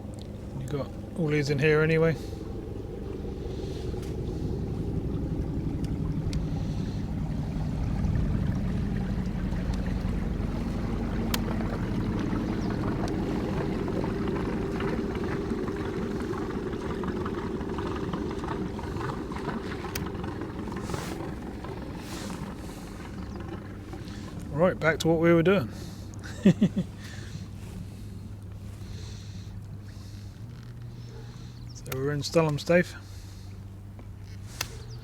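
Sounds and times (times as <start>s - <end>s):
boat motor humming: 0.0s - 35.0s
faint clicks: 5.7s - 7.0s, 11.0s - 13.7s, 18.2s - 24.5s.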